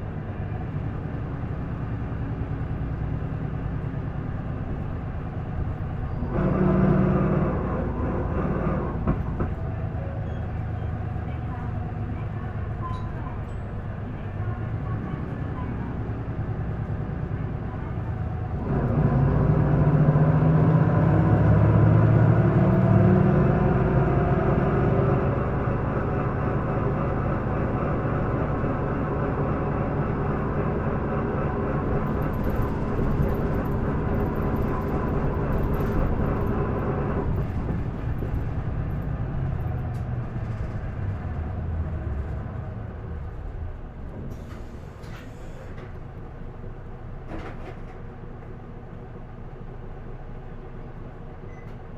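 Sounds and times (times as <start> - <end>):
bus diesel engine revving: 0.3 - 9.6, 14.7 - 45.9.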